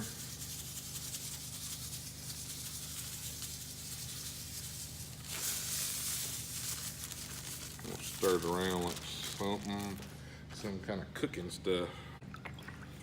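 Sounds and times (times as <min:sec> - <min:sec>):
salt grains pouring: 0:00.0 - 0:10.0.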